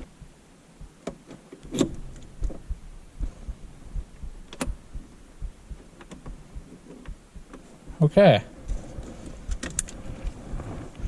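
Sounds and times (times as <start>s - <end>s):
soft low thumps: 0.0s - 11.0s
sharp clicks: 0.9s - 8.0s.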